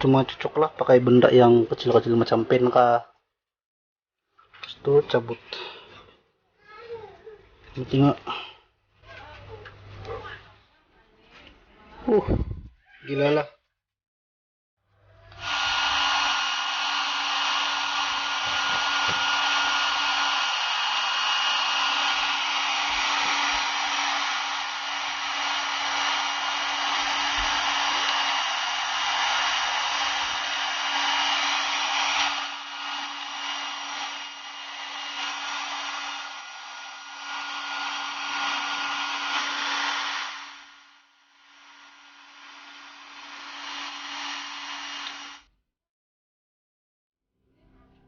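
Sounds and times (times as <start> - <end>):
electric blower rushing hiss: 15.3 - 45.4.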